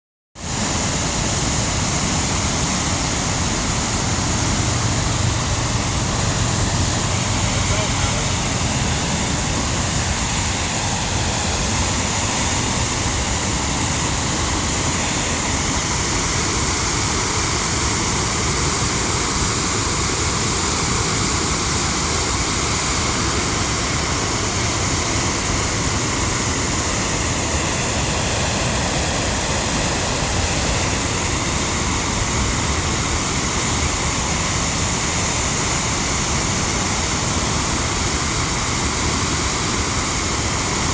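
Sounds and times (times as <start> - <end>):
floodwater rushing: 0.4 - 40.9.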